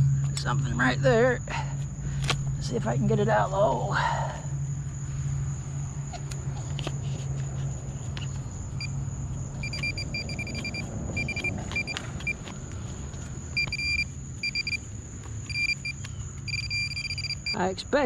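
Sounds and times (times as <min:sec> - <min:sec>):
metal detector beeping: 0:09.6 - 0:12.5, 0:13.6 - 0:14.8, 0:15.4 - 0:17.7.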